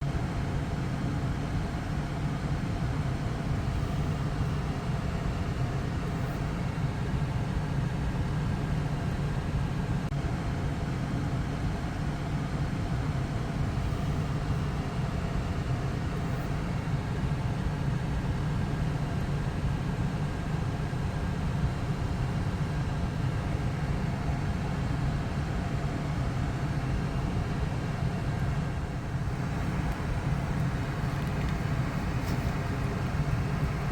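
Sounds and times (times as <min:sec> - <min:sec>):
car engine idling: 0:28.9 - 0:33.9.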